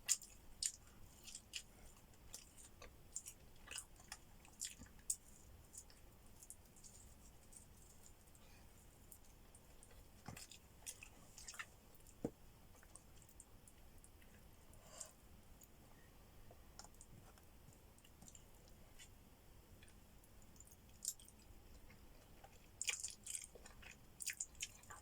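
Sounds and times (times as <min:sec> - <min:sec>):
mouth clicks and wet squishes: 0:00.0 - 0:07.0, 0:20.6 - 0:25.0
person chewing: 0:00.0 - 0:08.3, 0:09.0 - 0:15.7, 0:19.8 - 0:25.0.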